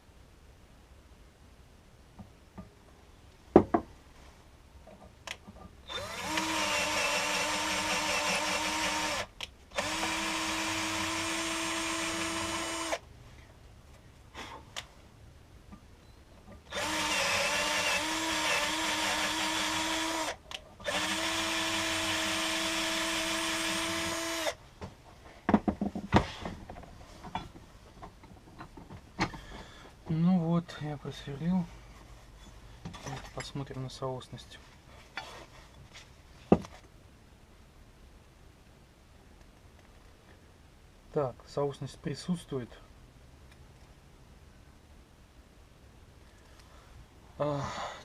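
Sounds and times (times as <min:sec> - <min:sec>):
electric drill boring: 0:05.9 - 0:13.0, 0:16.7 - 0:24.6.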